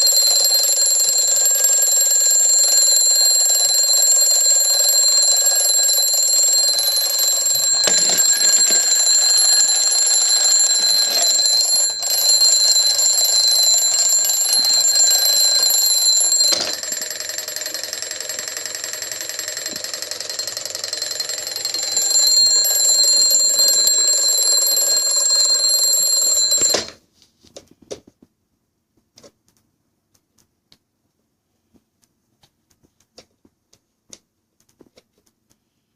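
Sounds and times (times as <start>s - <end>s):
alarm clock ringing: 0.0s - 27.0s.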